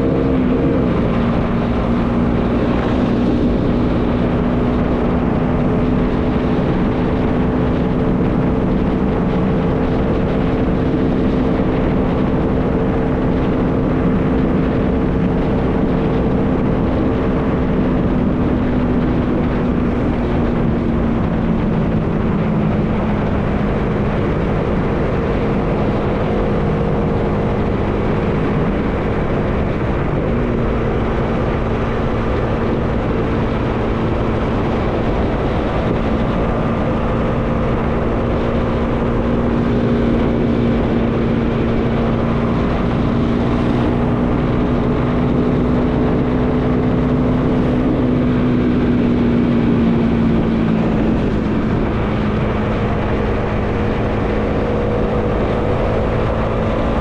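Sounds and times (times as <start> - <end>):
motorcycle engine cruising: 0.0 - 57.0
wind on microphone: 0.0 - 57.0.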